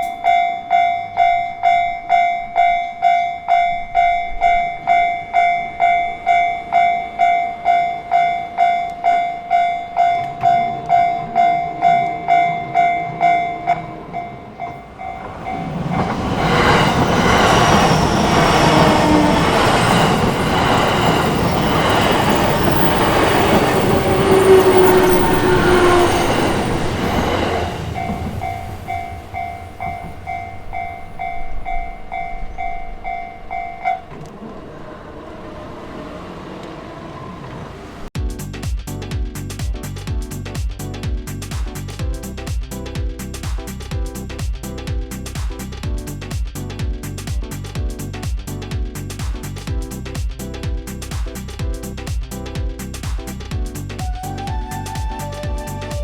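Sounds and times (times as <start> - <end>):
level-crossing warning bell: 0.0 - 35.7
electric train passing: 0.0 - 38.2
train whine: 0.0 - 38.2, 54.0 - 56.0.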